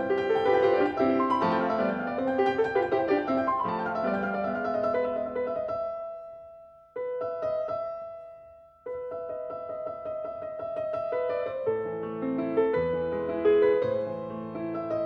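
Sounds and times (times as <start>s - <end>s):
gentle piano music: 0.0s - 15.0s.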